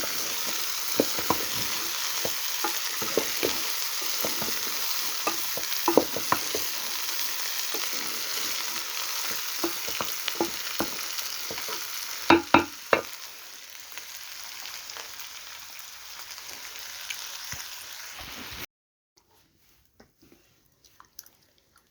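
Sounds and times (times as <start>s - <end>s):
food sizzling in a pot: 0.0s - 18.7s
spoon knocking against pot: 0.9s - 6.8s, 9.6s - 13.2s.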